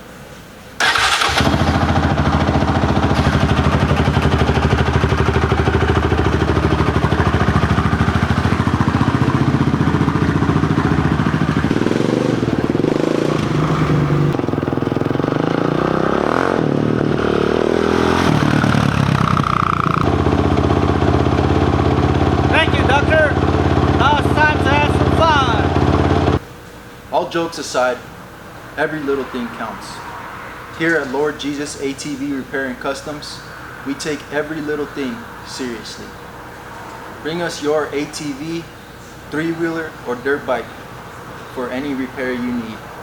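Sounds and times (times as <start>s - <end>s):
motorcycle engine running: 0.8s - 26.4s.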